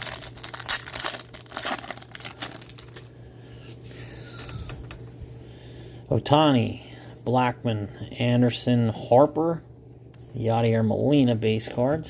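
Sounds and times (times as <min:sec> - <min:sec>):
foil wrapper tearing and crinkling: 0:00.0 - 0:03.2.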